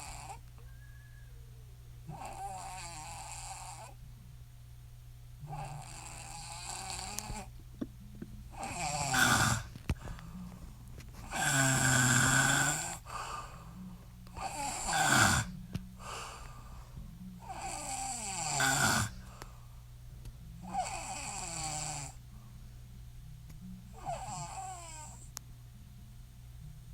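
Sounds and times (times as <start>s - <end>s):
woman snoring: 0.0s - 0.4s, 2.1s - 4.0s, 5.4s - 7.5s, 8.5s - 10.3s, 11.2s - 16.5s, 17.4s - 19.4s, 20.6s - 22.2s, 23.9s - 25.3s.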